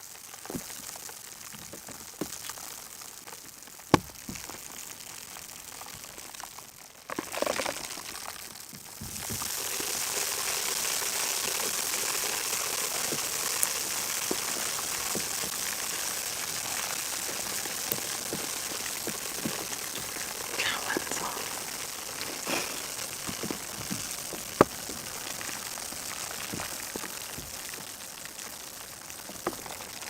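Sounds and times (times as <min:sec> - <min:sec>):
steady hiss: 0:09.2 - 0:29.6.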